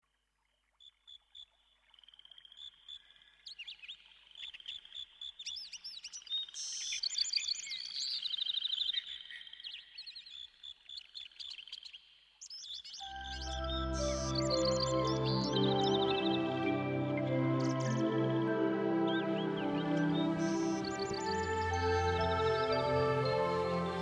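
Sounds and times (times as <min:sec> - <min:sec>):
birds chirping and whistling: 0:13.0 - 0:24.0.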